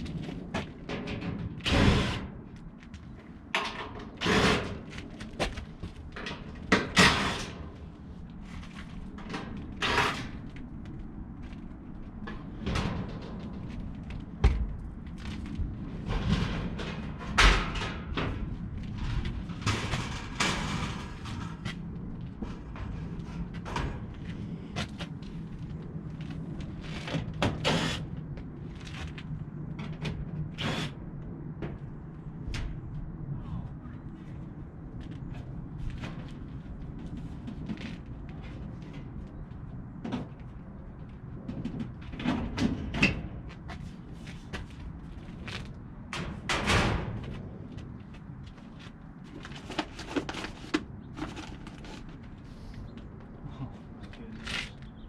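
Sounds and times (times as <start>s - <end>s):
sheet-metal panels clanking: 19.2s - 21.7s.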